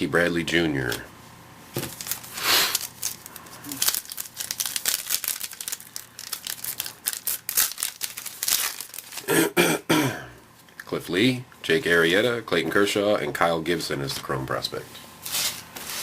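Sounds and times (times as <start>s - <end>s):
plastic wrapper crinkling: 1.8s - 9.3s.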